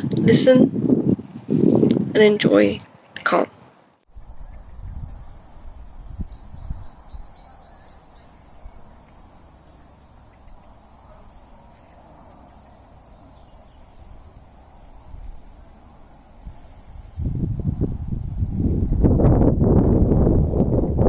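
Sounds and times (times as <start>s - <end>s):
wind rumble on microphone: 0.0s - 2.5s, 4.1s - 21.0s
bird singing high notes: 4.3s - 15.0s.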